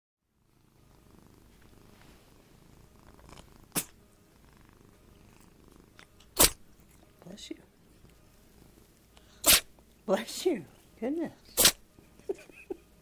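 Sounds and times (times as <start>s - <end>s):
cat purring: 0.4s - 11.6s
cat sneezing: 3.7s - 4.0s, 6.3s - 6.6s, 9.3s - 9.8s, 11.5s - 11.9s.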